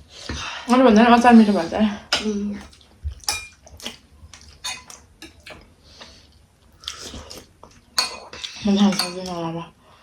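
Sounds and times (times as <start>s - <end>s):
tableware clicking and tapping: 4.6s - 5.6s, 8.0s - 9.4s.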